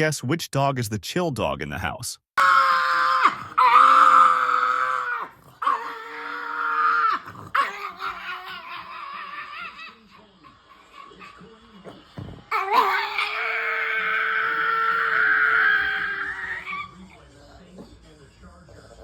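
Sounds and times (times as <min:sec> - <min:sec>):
dog howling: 0:02.4 - 0:10.1, 0:12.5 - 0:17.0.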